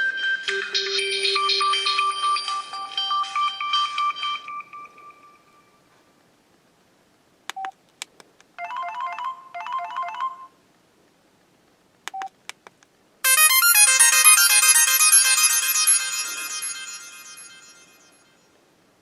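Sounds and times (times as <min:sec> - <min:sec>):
electronic ringtone melody: 0:00.0 - 0:05.6, 0:08.6 - 0:10.5, 0:13.2 - 0:18.2
key beeps: 0:07.5 - 0:07.7
two-note tune: 0:13.3 - 0:17.5.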